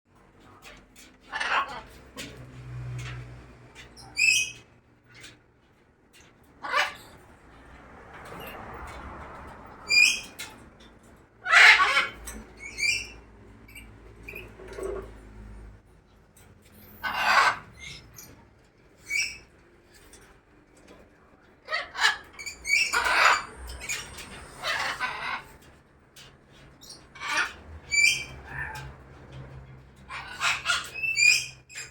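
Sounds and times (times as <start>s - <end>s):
harsh bird calls: 21.7s - 25.7s
birds chirping: 21.8s - 25.7s.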